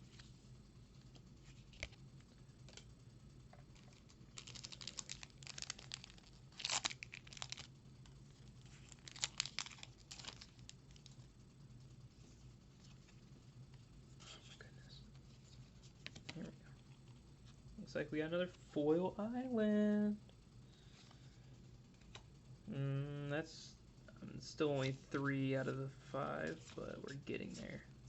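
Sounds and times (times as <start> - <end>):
foil wrapper crinkling and tearing: 3.7 - 11.2.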